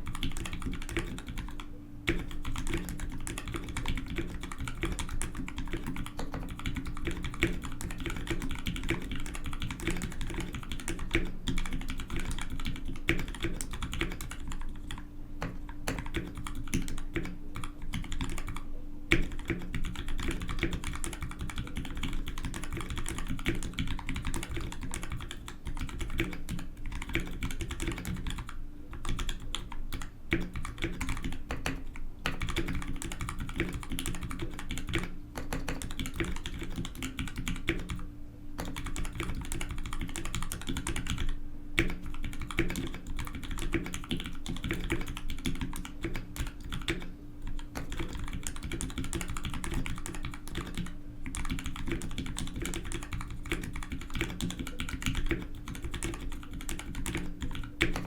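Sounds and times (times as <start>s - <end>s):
mechanical keyboard typing: 0.0s - 58.0s.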